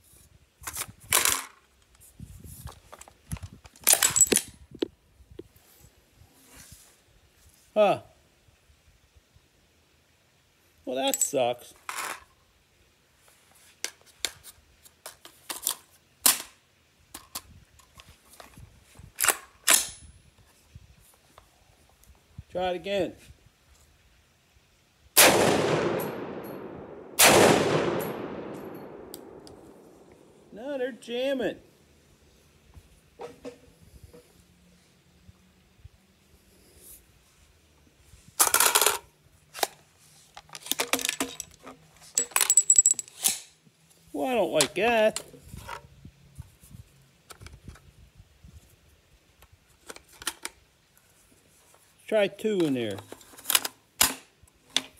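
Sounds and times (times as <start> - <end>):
rifle action metallic clacks: 3.7 - 4.5, 19.2 - 20.1, 25.2 - 30.3, 52.6 - 54.9
rifle action metal clicking: 27.7 - 29.8.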